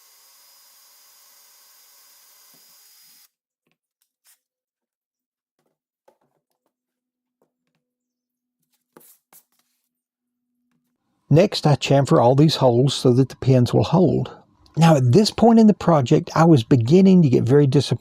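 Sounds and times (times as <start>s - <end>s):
power drill boring: 0.0s - 3.3s.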